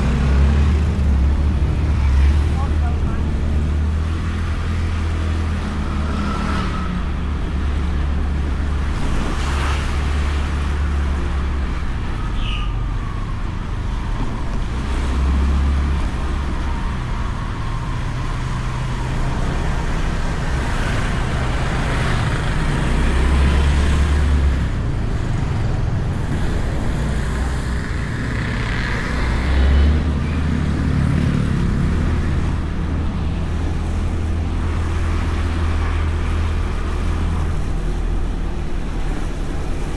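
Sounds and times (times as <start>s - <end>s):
scooter engine: 17.4s - 36.3s.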